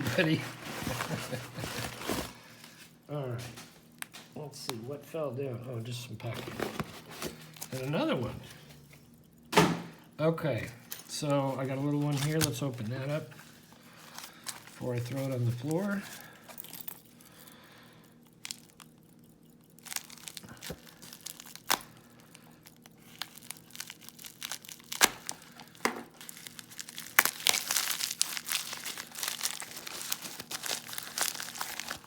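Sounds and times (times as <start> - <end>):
packaging tearing: 0.0 - 2.9, 11.4 - 16.3, 19.8 - 32.0
packaging crinkling: 0.0 - 5.0, 6.2 - 8.7, 10.6 - 32.0.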